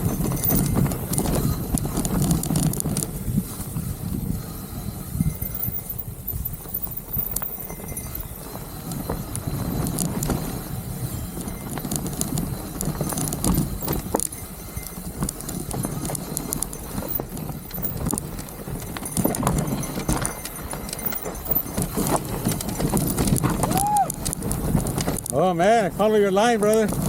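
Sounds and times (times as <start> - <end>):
wind on microphone: 0.0 - 26.0
bike rattling: 0.0 - 27.0
tyres crunching over rocks: 11.4 - 27.0.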